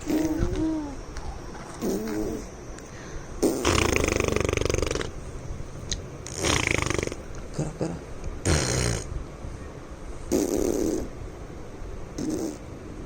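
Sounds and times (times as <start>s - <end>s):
rattling snore-like vocal noise: 1.6s - 2.5s, 3.4s - 5.2s, 6.3s - 7.2s, 12.2s - 12.6s.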